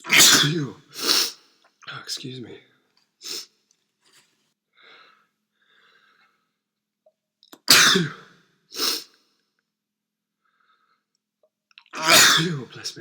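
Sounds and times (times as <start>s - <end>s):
man sneezing: 0.0s - 1.4s, 7.7s - 9.1s, 12.0s - 12.8s
sharp inhales: 1.0s - 1.4s, 4.8s - 6.4s.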